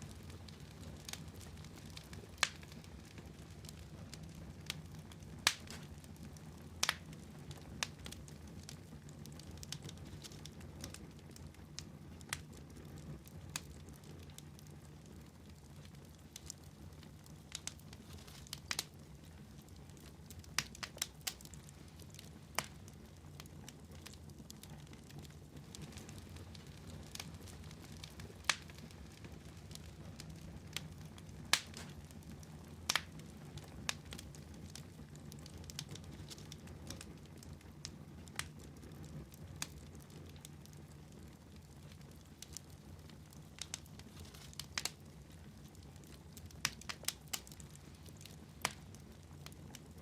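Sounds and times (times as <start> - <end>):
fire crackling in a fireplace: 0.0 - 50.0.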